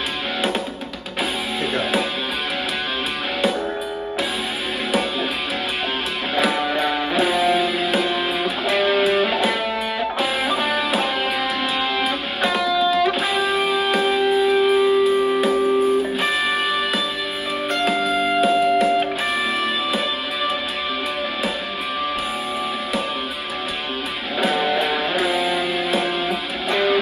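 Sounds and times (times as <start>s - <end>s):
backing track: 0.0s - 27.0s
electric guitar solo with bends: 1.5s - 27.0s.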